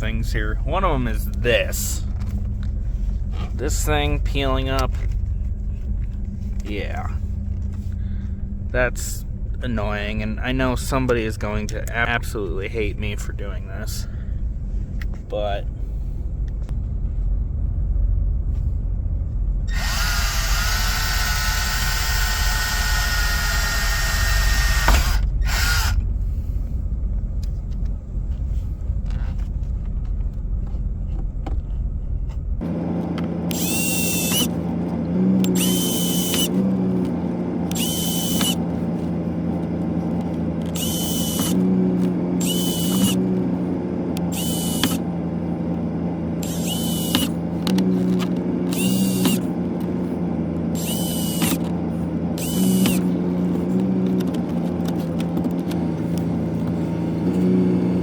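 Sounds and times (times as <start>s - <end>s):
power drill whirring: 19.7s - 26.0s, 33.5s - 34.7s, 35.3s - 39.2s, 40.2s - 43.6s, 44.2s - 45.1s, 46.3s - 50.1s, 50.7s - 58.0s.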